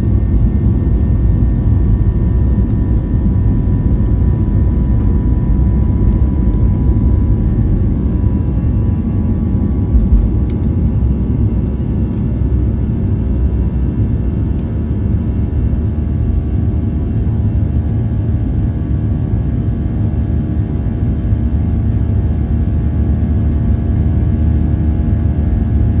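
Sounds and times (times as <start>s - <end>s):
jet engines rumbling: 0.0s - 19.9s
brief thump: 9.9s - 10.4s.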